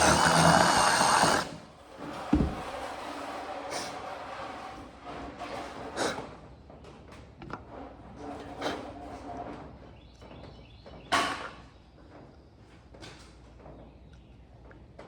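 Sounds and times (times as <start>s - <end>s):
sharp knocks: 2.3s - 2.8s.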